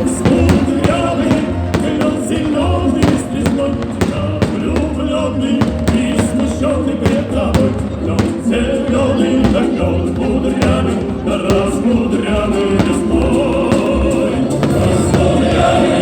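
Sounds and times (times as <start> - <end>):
choral singing: 0.0 - 16.0
dense instrumental backing: 0.0 - 16.0.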